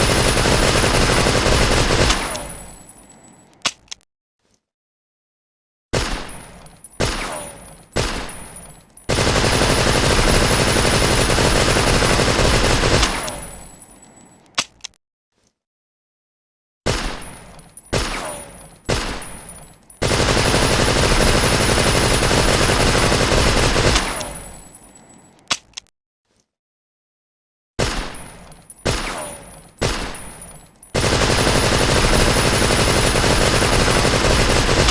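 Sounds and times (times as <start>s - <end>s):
submachine gun full-auto burst: 0.0s - 2.4s, 9.1s - 13.2s, 20.0s - 24.2s, 31.0s - 34.9s
submachine gun shots: 31.0s - 34.9s.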